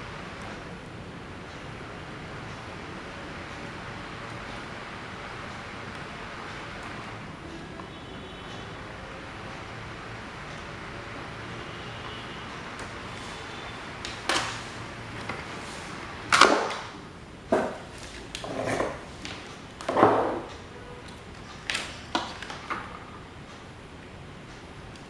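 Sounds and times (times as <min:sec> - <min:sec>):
tools knocking and clunking: 0:17.5 - 0:20.6.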